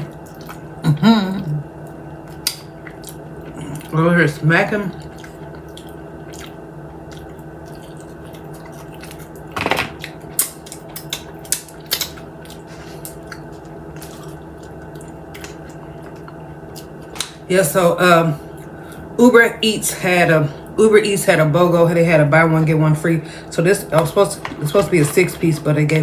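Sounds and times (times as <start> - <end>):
chewing and lip smacking: 0.0 - 0.8, 1.5 - 4.0, 4.9 - 17.4.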